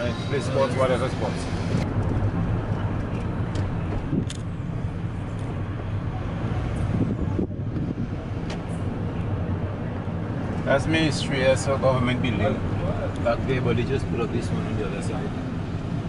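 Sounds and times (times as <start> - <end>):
car engine and road rumble: 0.0 - 16.0.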